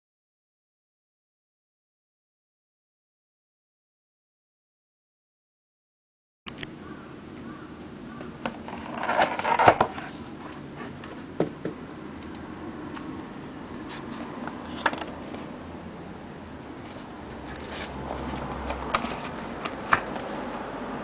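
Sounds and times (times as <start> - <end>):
low steady hum: 6.5 - 21.0
rustling and scraping: 8.4 - 11.6, 13.7 - 15.6, 16.8 - 20.7
handling clicks and knocks: 17.3 - 20.3.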